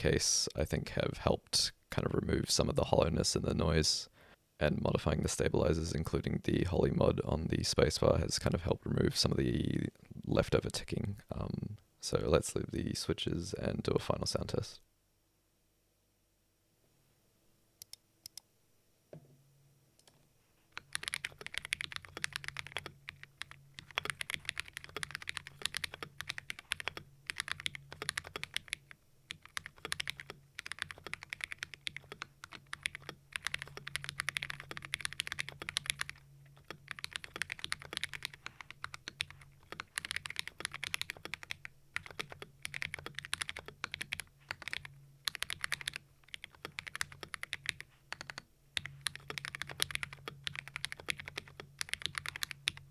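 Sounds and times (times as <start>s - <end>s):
mechanical keyboard typing: 20.8s - 52.9s.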